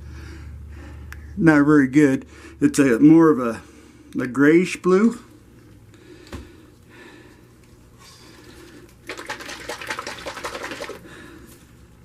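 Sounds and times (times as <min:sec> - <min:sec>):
paint pouring gush: 0:09.1 - 0:11.1.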